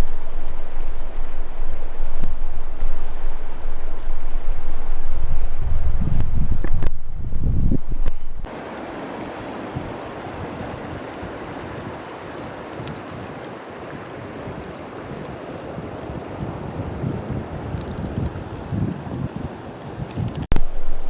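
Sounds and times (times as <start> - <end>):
wind rumble on microphone: 0.0 - 8.5, 9.3 - 21.0
river water flowing: 0.0 - 16.4, 20.5 - 21.0.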